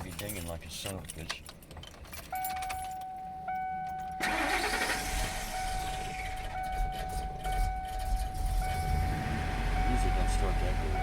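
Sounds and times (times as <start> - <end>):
ignition key chime dinging: 2.2 - 4.9, 5.5 - 8.9
van engine starter cranking: 4.2 - 8.9.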